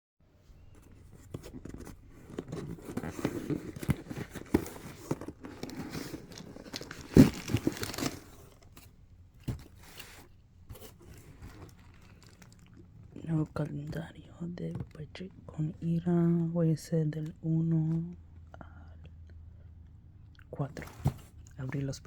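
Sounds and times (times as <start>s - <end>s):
packaging crinkling and tearing: 1.4s - 8.9s, 10.8s - 12.8s.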